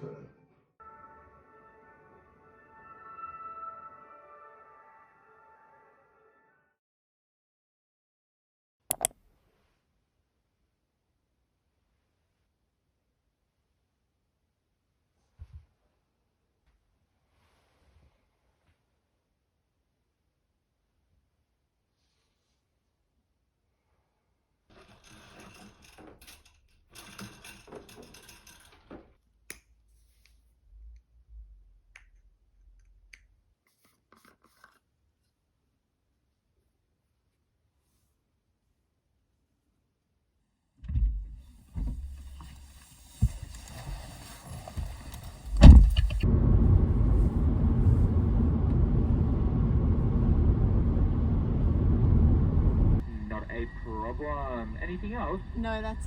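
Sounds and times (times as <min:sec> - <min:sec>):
sharp click: 0:08.9 - 0:09.2
rustling and scraping handling: 0:33.7 - 0:35.4, 0:42.0 - 0:46.2
car rumble from inside cabin: 0:45.4 - 0:53.0.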